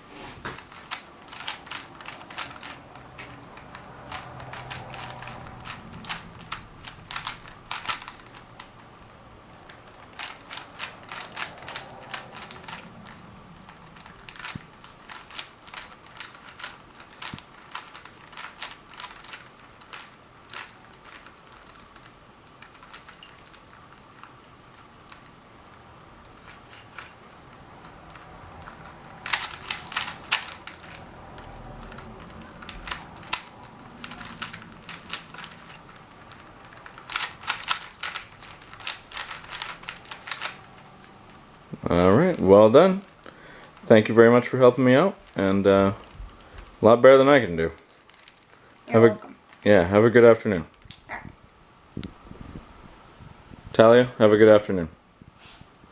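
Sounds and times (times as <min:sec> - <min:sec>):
puzzle cube clicking: 0:00.6 - 0:08.8, 0:09.6 - 0:40.8.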